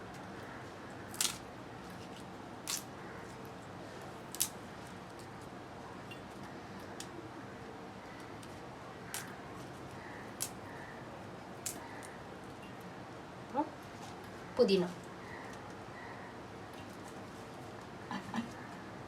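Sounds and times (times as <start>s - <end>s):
leaves rustling: 0.0s - 6.0s, 9.0s - 12.5s.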